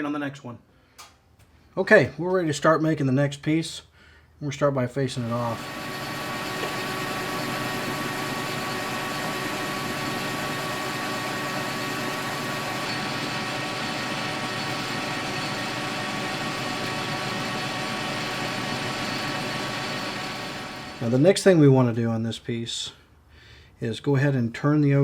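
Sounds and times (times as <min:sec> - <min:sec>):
metal lathe running: 0:05.2 - 0:21.4.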